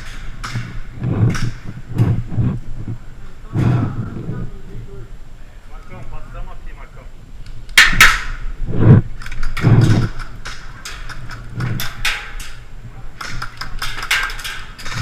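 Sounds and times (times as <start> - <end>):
heavy thuds: 0.0 - 4.5
sharp clicks and knocks: 9.2 - 12.6, 13.2 - 15.0.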